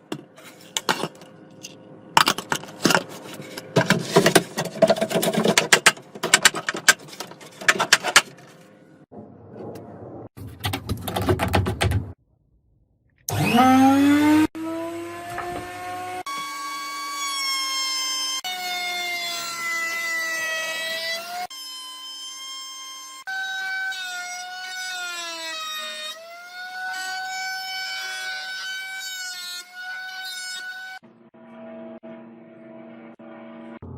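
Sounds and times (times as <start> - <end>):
wood router whining: 13.3 - 31.7.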